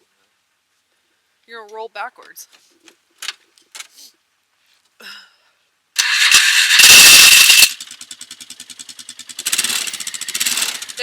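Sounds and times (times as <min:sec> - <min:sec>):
atv engine revving and idling: 0:06.0 - 0:11.0.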